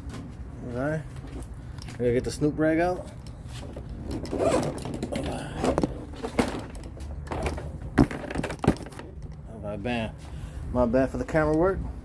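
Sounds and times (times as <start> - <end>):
sharp knocks: 7.3 - 9.0.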